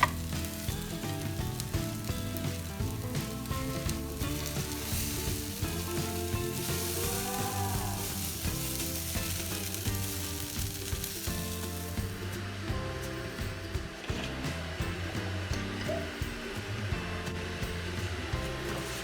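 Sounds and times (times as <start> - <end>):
food sizzling in hot oil: 0.0 - 14.8
background music: 0.0 - 19.0.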